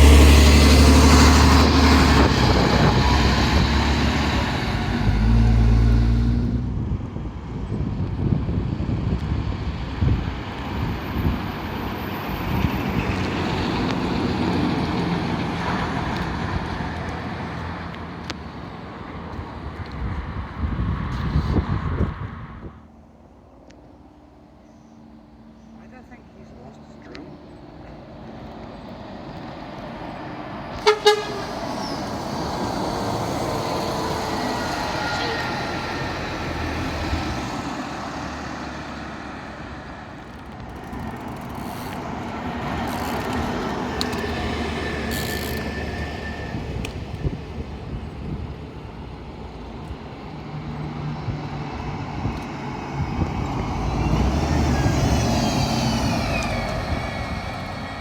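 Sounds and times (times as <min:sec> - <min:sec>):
bus engine running: 0:00.0 - 0:22.8, 0:25.2 - 0:58.0
vehicle horn toots: 0:30.8 - 0:31.6.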